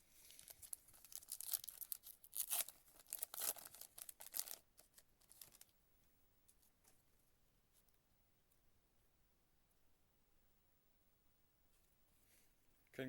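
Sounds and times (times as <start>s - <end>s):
foil wrapper tearing and crinkling: 0.2s - 5.7s.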